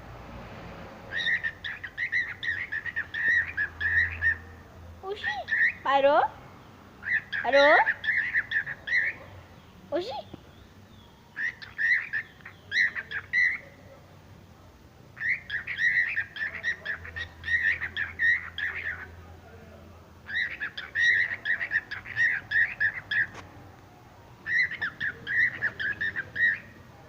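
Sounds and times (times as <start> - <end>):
bird squawky calls: 1.1 - 6.0, 7.0 - 9.3, 10.1 - 13.8, 15.2 - 19.2, 20.3 - 23.4, 24.4 - 26.8.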